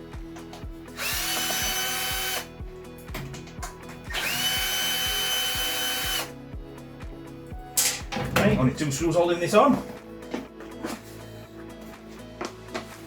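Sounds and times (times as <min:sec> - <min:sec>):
power drill whining: 0:01.0 - 0:02.5, 0:04.1 - 0:06.3.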